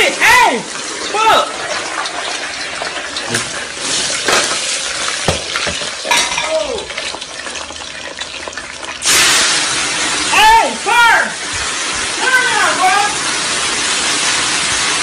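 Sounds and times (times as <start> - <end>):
food sizzling in a pan: 0.1 - 15.0.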